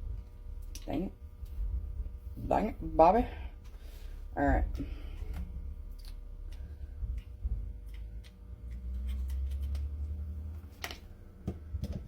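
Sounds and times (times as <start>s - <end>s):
low rumble: 1.2s - 8.1s.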